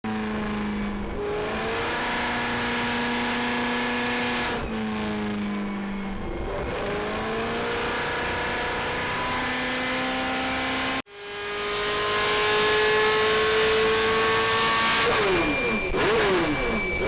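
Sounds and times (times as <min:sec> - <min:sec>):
loud car engine on dynamometer: 0:00.0 - 0:17.0.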